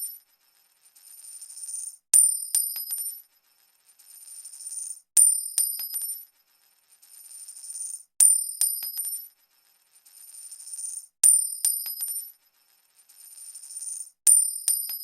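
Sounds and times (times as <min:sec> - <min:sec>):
coin dropping and bouncing: 0:00.0 - 0:15.0.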